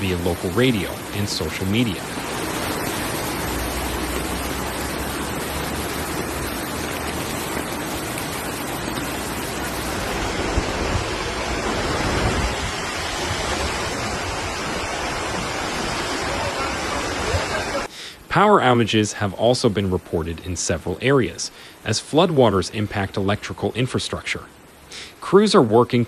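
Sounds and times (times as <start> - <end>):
rain: 0.0 - 26.0
rushing floodwater: 0.0 - 26.0.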